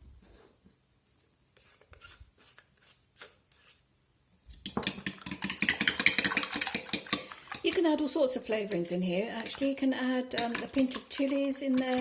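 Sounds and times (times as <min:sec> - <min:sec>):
fork beating eggs in bowl: 0:04.6 - 0:12.0.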